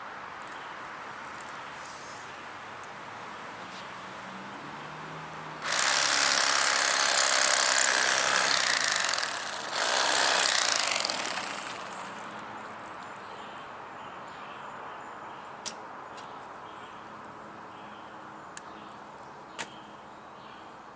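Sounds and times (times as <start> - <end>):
electric fillet knife running: 5.6 - 12.2.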